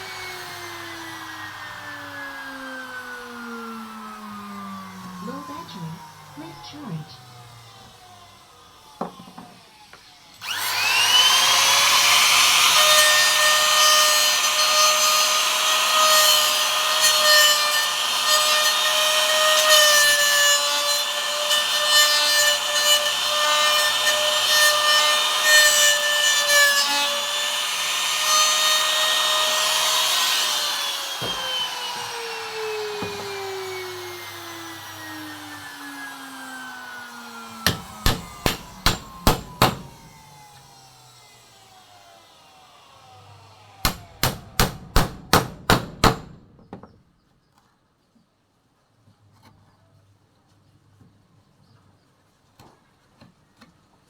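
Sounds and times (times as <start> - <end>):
router winding down: 0.0 - 9.0, 9.6 - 19.8, 20.6 - 44.6
palm router cutting wood: 0.0 - 46.5.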